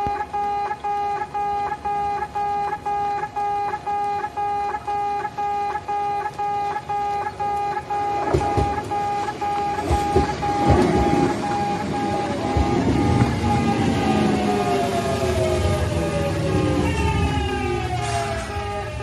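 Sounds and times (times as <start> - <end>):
level-crossing alarm beeping: 0.0 - 19.0
train wheels knocking over rail joints: 8.2 - 13.4.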